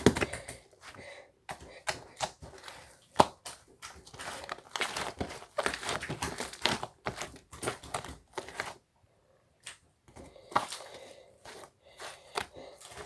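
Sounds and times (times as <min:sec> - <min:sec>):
slime squishing and crackling: 0:01.6 - 0:08.8, 0:10.2 - 0:13.0.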